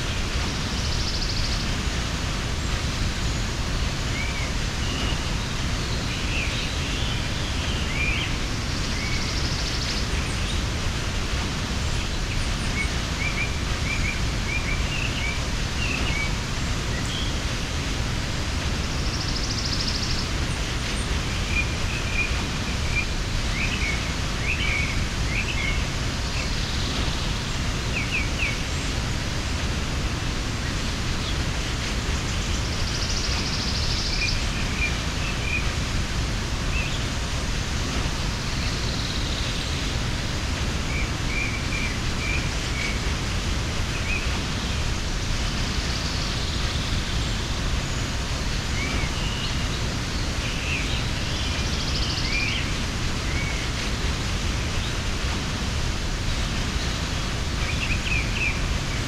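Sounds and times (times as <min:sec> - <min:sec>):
small birds chirping: 0:00.0 - 0:59.0
waterfall rushing: 0:00.0 - 0:59.0.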